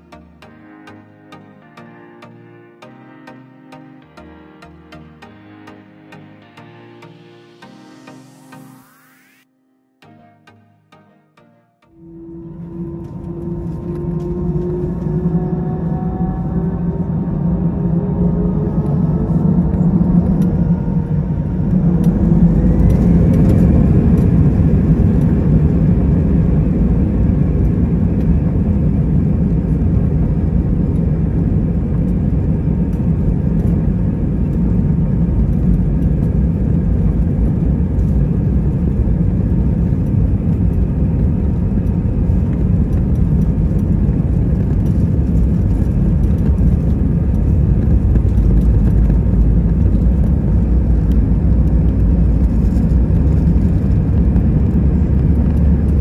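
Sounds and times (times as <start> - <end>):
jet engines spooling up and roaring: 0.0 - 9.4, 11.9 - 56.0.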